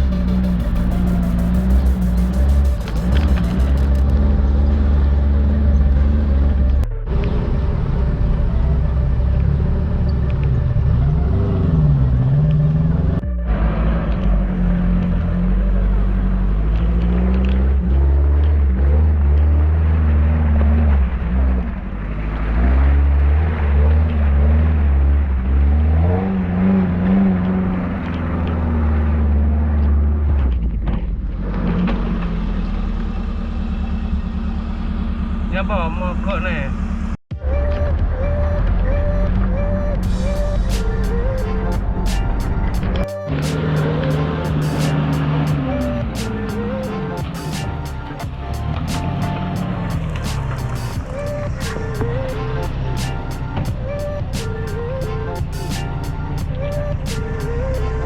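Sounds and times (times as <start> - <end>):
car engine revving: 0.0 - 58.0.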